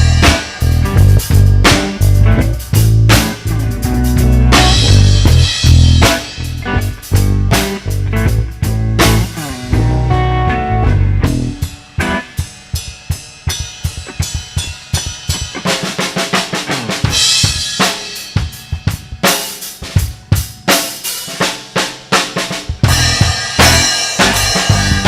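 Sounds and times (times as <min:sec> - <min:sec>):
drum kit playing: 0:00.0 - 0:25.0.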